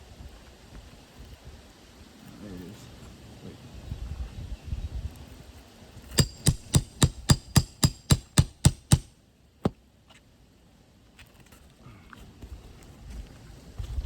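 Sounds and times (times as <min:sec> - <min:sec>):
hammer tapping metal: 0:06.2 - 0:09.1.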